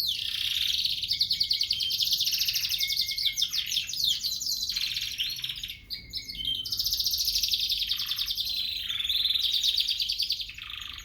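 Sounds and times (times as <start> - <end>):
canary singing trills: 0.0 - 11.0.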